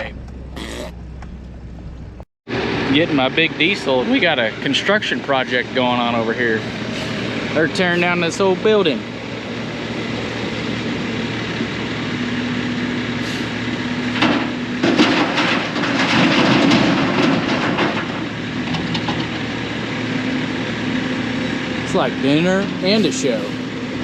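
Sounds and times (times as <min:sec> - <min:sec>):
steady engine hum: 0:00.0 - 0:24.0
building demolition crunching: 0:14.0 - 0:20.6.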